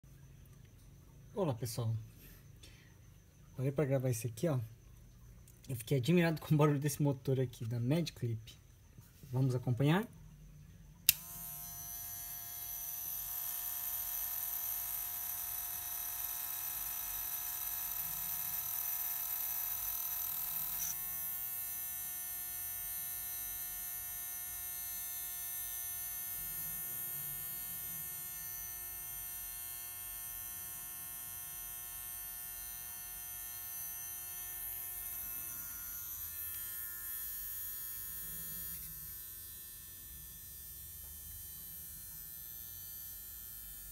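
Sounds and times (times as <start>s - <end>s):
hair clipper switch click: 11.0s - 11.8s
hair clipper buzzing: 11.0s - 43.9s.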